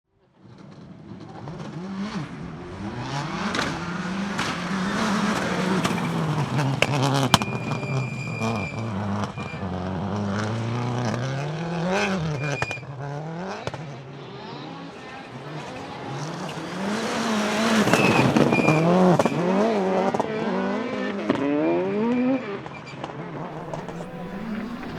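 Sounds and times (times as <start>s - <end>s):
rally car engine revving: 0.7s - 22.2s, 23.1s - 24.9s
exhaust pops and cracks: 2.9s - 7.8s, 23.5s - 24.9s.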